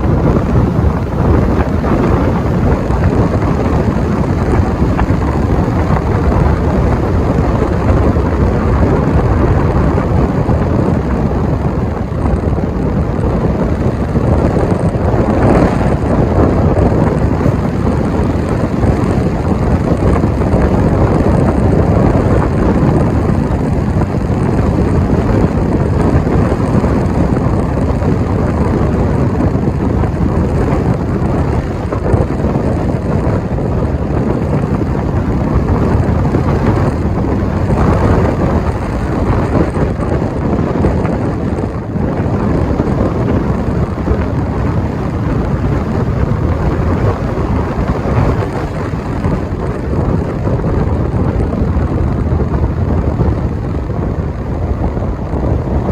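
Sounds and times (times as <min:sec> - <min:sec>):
car road noise: 0:00.0 - 0:55.9
wind on microphone: 0:00.0 - 0:55.9.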